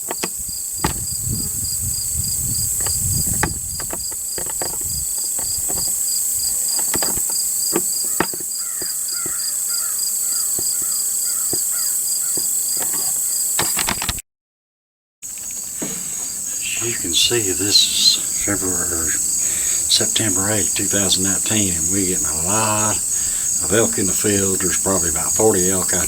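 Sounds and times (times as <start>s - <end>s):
pulsed insect chirp: 0.0s - 13.9s, 15.3s - 26.0s
cricket buzz: 0.0s - 14.2s, 15.2s - 26.0s
short chirping calls: 15.3s - 26.0s.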